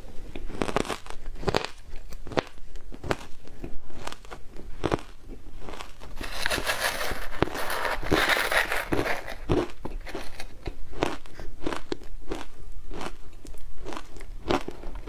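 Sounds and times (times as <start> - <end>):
shaved ice crunching chews: 4.8 - 13.2.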